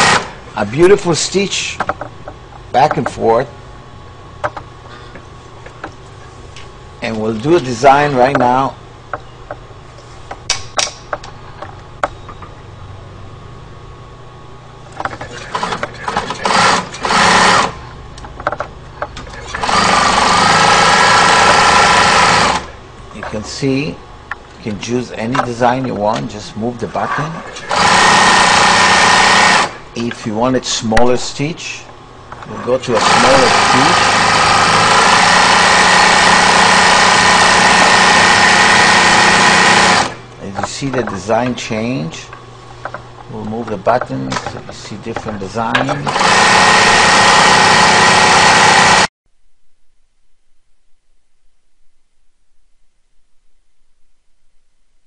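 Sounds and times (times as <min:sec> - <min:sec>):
sewing machine stitching: 0:00.0 - 0:00.4, 0:15.4 - 0:17.8, 0:19.4 - 0:22.8, 0:27.5 - 0:29.8, 0:32.8 - 0:40.2, 0:45.8 - 0:49.1.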